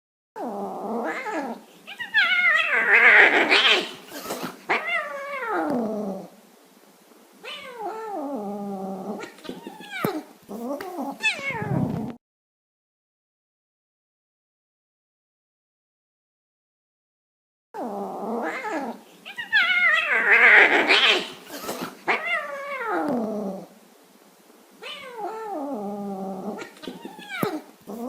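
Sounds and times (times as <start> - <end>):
cat meowing: 1.0 - 5.9, 9.1 - 12.0, 18.4 - 23.3, 24.8 - 25.8, 26.4 - 28.0.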